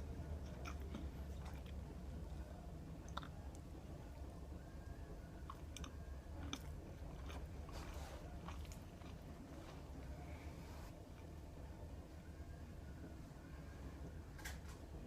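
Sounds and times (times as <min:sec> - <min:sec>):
person chewing food: 0:00.2 - 0:02.4, 0:05.4 - 0:10.2.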